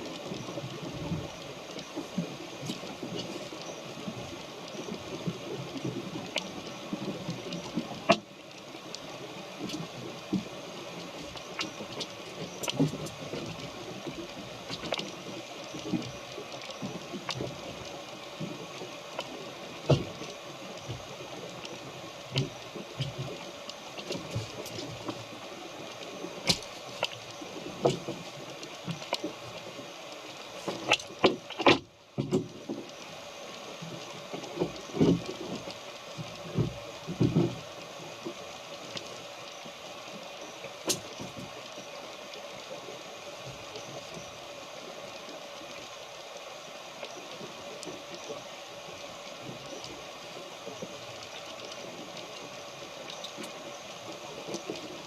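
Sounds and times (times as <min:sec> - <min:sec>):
water splashing against boat hull: 0:01.7 - 0:08.3, 0:08.9 - 0:33.0, 0:34.4 - 0:39.2.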